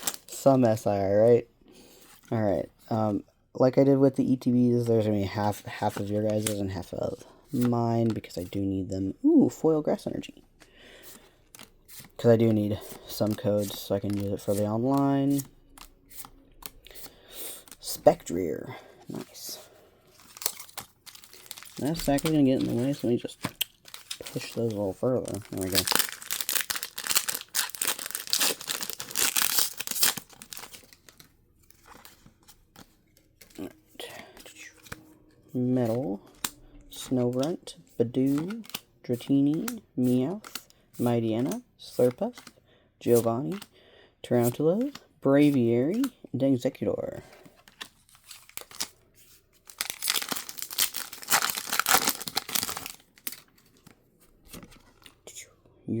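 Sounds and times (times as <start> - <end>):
foil wrapper crinkling and tearing: 0.0 - 0.4, 20.2 - 32.2, 47.7 - 49.0, 49.6 - 54.0.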